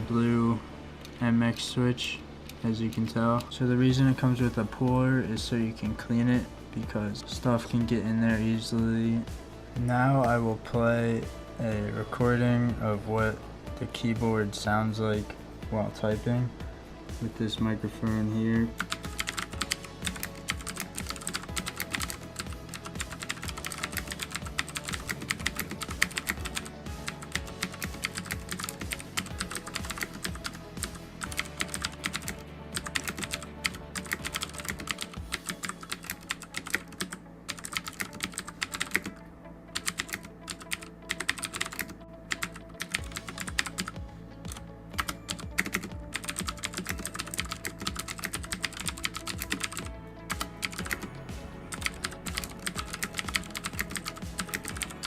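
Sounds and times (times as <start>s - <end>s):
background music: 0.0s - 55.0s
mechanical keyboard typing: 18.8s - 39.2s, 39.8s - 51.1s, 51.7s - 55.0s.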